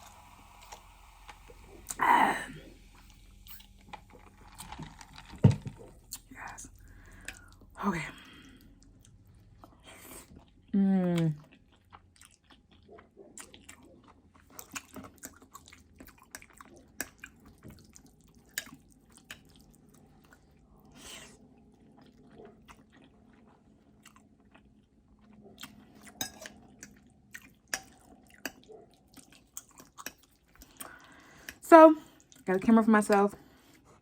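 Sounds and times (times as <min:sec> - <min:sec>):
breathy sound: 0:01.6 - 0:03.5, 0:06.7 - 0:08.8
wet chewing mouth clicks: 0:08.8 - 0:20.6.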